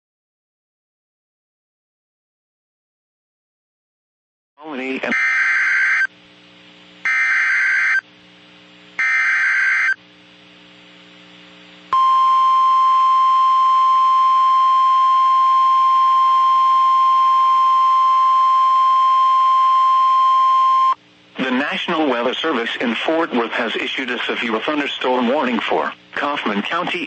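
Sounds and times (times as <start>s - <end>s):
digital data bursts screeching: 5.0s - 6.1s, 9.0s - 10.0s
steady warning alarm tone: 5.0s - 6.1s, 7.0s - 8.0s, 9.0s - 10.0s, 12.0s - 21.0s.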